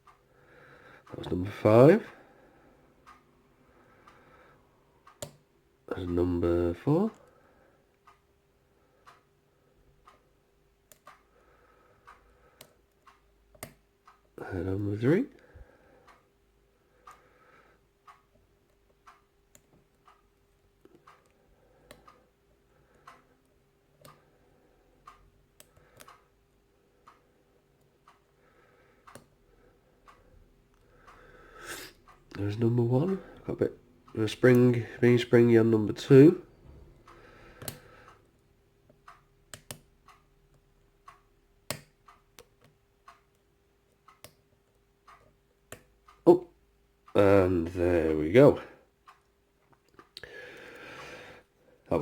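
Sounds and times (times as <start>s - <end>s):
clock ticking: 0.0s - 52.0s
faint steady hum: 0.0s - 52.0s
soft clicks: 3.0s - 3.3s, 5.0s - 6.2s, 9.9s - 11.3s, 12.0s - 14.4s, 18.0s - 22.3s, 22.9s - 24.3s, 25.0s - 28.3s, 29.0s - 29.4s, 36.1s - 46.2s.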